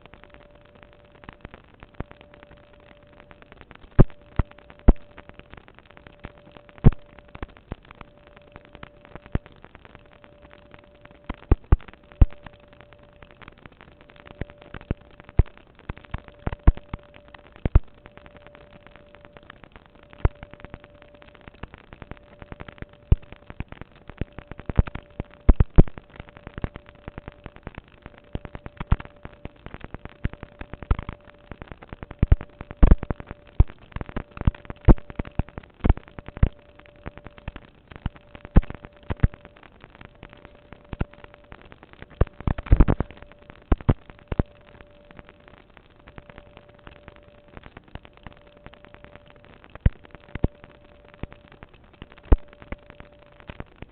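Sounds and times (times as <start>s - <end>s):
faint steady tone: 0.0s - 53.9s
sharp pops and clicks: 0.0s - 53.9s.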